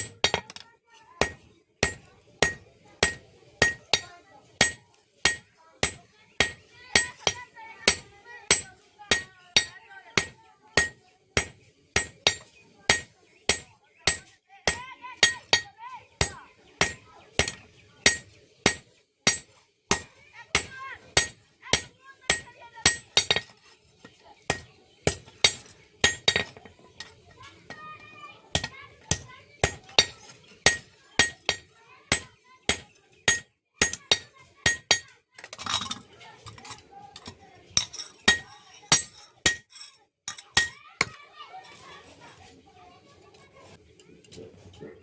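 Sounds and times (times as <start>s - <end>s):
hammer striking metal on anvil: 1.2s - 23.5s, 30.7s - 35.1s, 37.8s - 39.7s.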